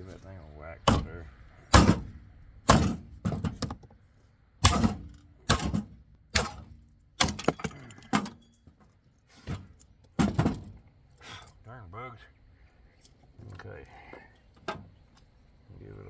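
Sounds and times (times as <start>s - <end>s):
metallic bangs with rattle: 0.8s - 3.8s, 4.6s - 8.6s.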